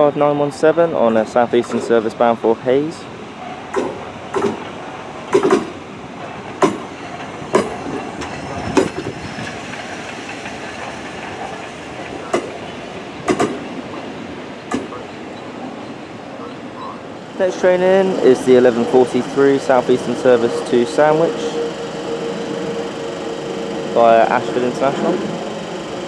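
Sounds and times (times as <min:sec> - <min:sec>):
train running noise: 0:00.0 - 0:26.0
train wheels knocking over rail joints: 0:03.7 - 0:14.0, 0:14.6 - 0:15.1.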